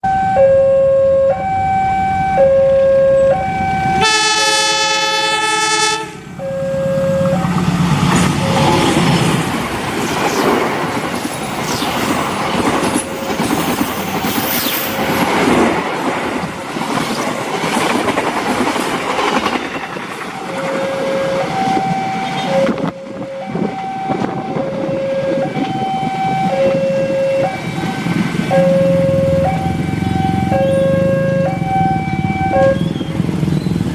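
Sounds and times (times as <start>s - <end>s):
two-tone level crossing alarm: 0.0s - 7.6s, 20.2s - 33.1s
locomotive horn blast: 0.1s - 7.5s, 20.6s - 27.9s, 28.5s - 33.1s
train wheels clattering on rails: 7.2s - 23.6s.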